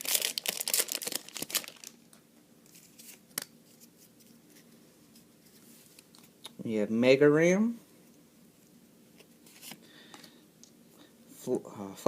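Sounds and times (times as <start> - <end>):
wrapper crinkling and tearing: 0.0 - 2.0.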